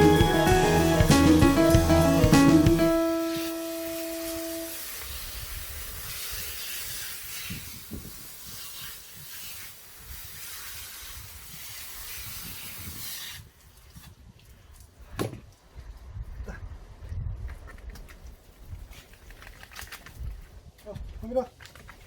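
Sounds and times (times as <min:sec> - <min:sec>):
hose water spraying: 0:00.0 - 0:14.5.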